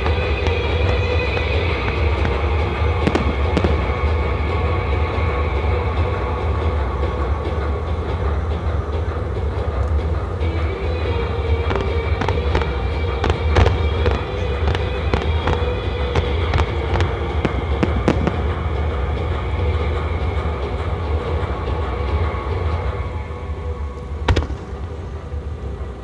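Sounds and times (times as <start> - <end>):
fireworks bursts and bangs: 0.0 - 5.4, 11.4 - 19.4, 24.3 - 24.8
low rumble: 0.0 - 26.0.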